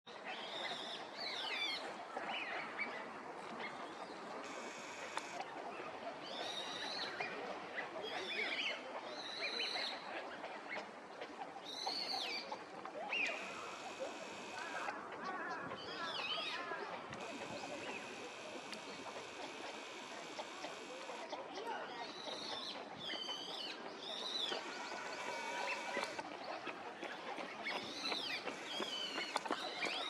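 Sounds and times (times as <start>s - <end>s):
chatter of lower bird calls: 0.2s - 30.0s
high arching bird calls: 11.7s - 26.6s.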